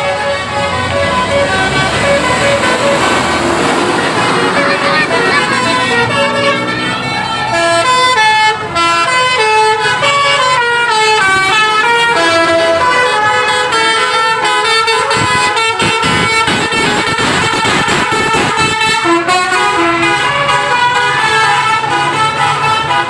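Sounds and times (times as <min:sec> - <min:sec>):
multi-tone bus horns playing melody: 0:00.0 - 0:23.0
rapid low throbbing: 0:15.0 - 0:19.1.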